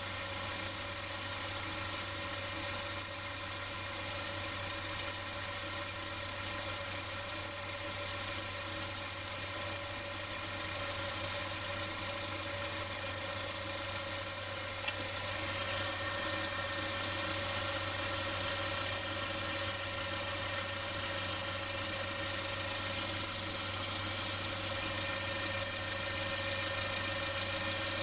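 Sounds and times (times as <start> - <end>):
fast high-pitched engine ticking: 0.0 - 28.0
car engine idling: 6.5 - 28.0.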